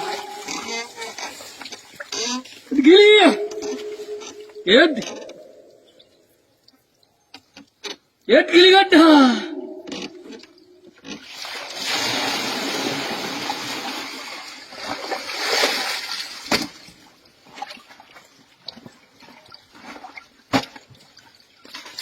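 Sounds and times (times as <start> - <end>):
water gushing and splashing: 0.0 - 5.9, 9.8 - 16.8.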